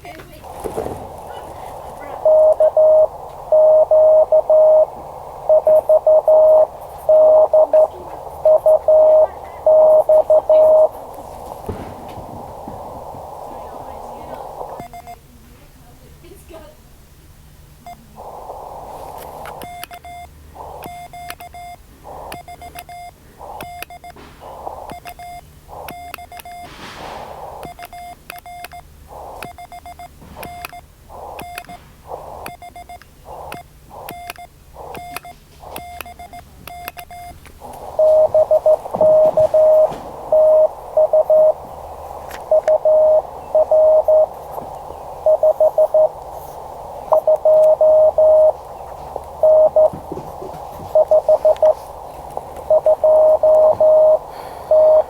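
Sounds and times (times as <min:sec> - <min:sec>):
radio receiver hiss: 0:00.0 - 0:55.0
morse code tone: 0:01.1 - 0:15.2, 0:29.1 - 0:55.0.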